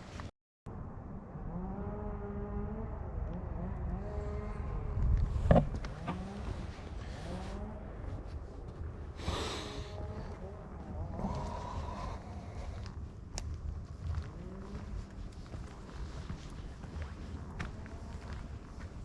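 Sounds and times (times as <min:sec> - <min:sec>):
rumbling microphone noise: 0:02.4 - 0:18.9
person breathing hard: 0:09.1 - 0:10.4, 0:11.1 - 0:13.1.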